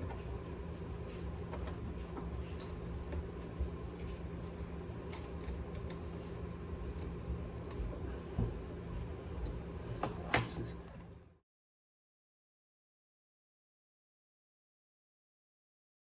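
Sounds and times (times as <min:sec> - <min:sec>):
steady low hum: 0:00.0 - 0:11.4.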